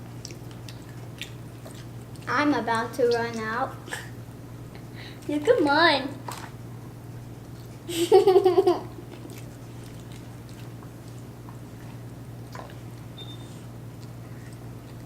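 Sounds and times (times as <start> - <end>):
faint chewing: 0.0 - 2.3, 7.4 - 7.9, 9.0 - 15.0
steady low hum: 0.0 - 15.0.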